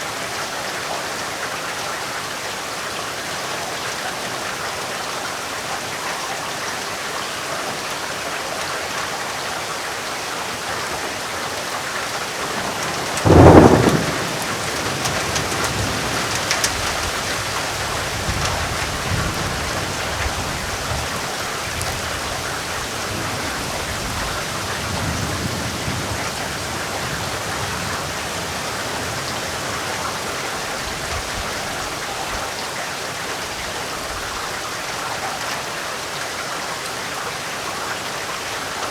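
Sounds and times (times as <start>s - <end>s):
heavy rain: 0.0s - 38.9s
thunderclap and rumbling: 12.4s - 32.0s.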